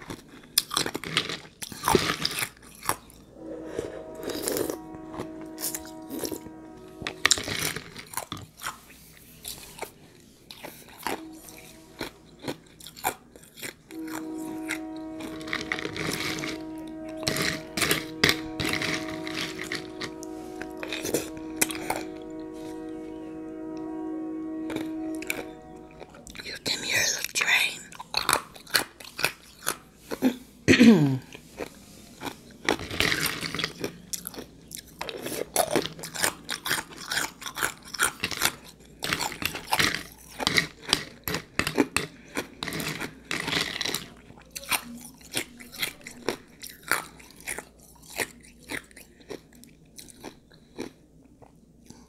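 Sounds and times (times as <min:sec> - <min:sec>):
short falling-pitch sound: 0:03.3 - 0:07.8, 0:11.0 - 0:12.4, 0:13.9 - 0:26.5.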